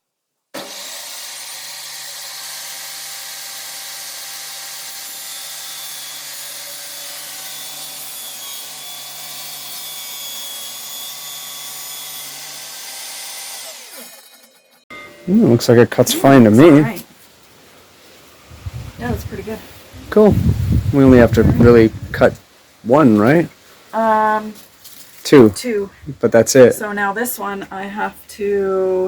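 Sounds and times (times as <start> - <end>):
power saw cutting plastic plank: 0.6 - 14.8.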